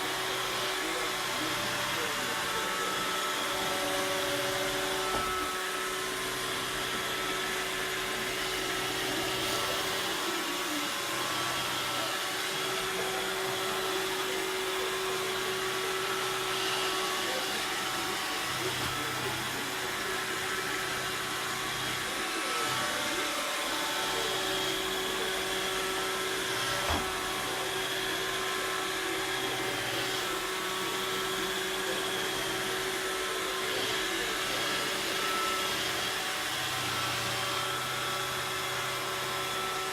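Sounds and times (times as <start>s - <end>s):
robot vacuum whirring: 0.0s - 39.9s.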